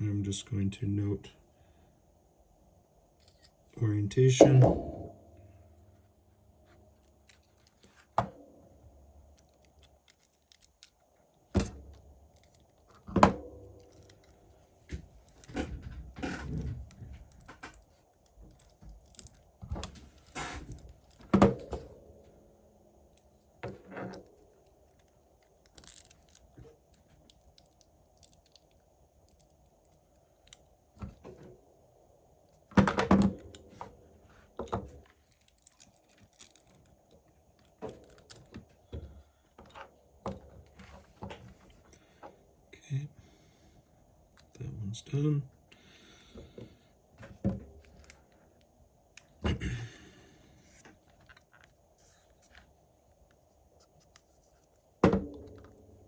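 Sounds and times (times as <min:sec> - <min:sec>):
small parts clattering: 0:24.2 - 0:30.6.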